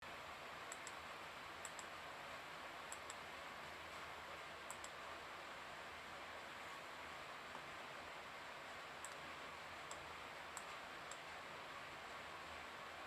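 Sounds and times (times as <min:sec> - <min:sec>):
steady hiss: 0:00.1 - 0:13.0
faint sharp clicks: 0:00.7 - 0:01.0, 0:01.6 - 0:01.9, 0:02.9 - 0:03.2, 0:04.7 - 0:05.0, 0:09.0 - 0:09.2, 0:09.9 - 0:11.3.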